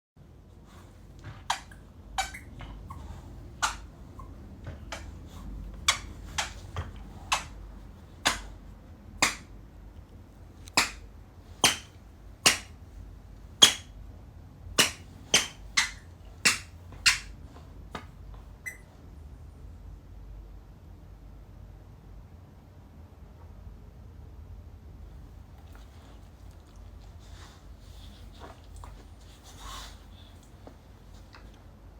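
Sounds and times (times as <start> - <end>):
squeaky dog toy squeaks: 1.4 - 5.1, 14.8 - 17.3, 18.6 - 18.9.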